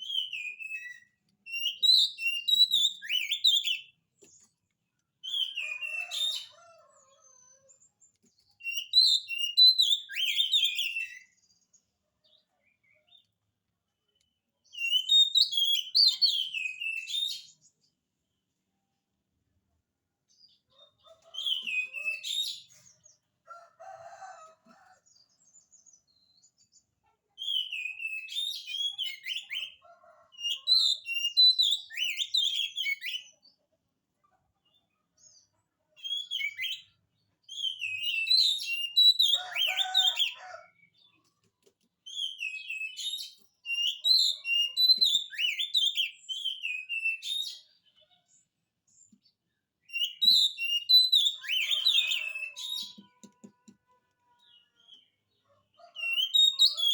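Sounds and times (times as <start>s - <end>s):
bird singing whistled phrases: 0.0s - 3.9s, 8.7s - 11.3s, 14.8s - 17.5s, 27.4s - 29.8s, 30.8s - 33.3s, 36.0s - 36.9s, 37.5s - 39.4s, 42.1s - 47.7s, 49.9s - 53.0s, 56.1s - 56.9s.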